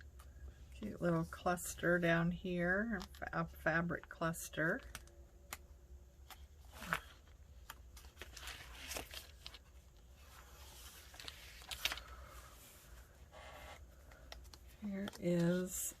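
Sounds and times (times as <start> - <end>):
paper pages rustling: 6.2 - 16.0.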